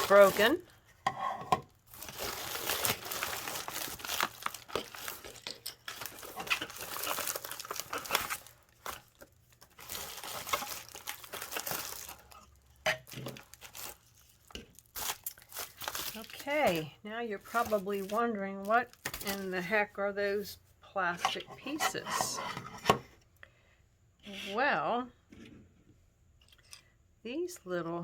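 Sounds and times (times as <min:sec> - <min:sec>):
plastic packaging crinkling: 0:00.0 - 0:00.8, 0:01.8 - 0:19.7.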